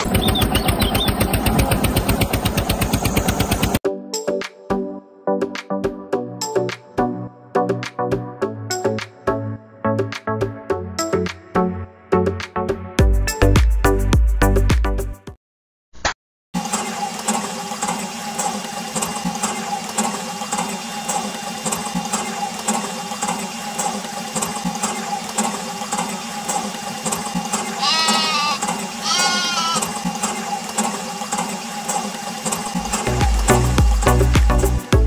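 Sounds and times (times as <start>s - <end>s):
water pump humming: 16.6s - 35.0s
bleating calls: 27.8s - 29.9s.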